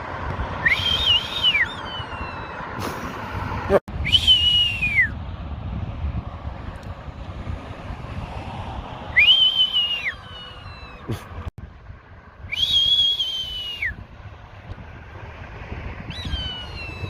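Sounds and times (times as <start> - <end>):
man whistling: 0.6 - 2.5, 4.0 - 5.2, 9.1 - 11.0, 12.5 - 14.0
sparrowhawk calling: 1.1 - 2.6, 10.0 - 11.1, 16.1 - 17.0.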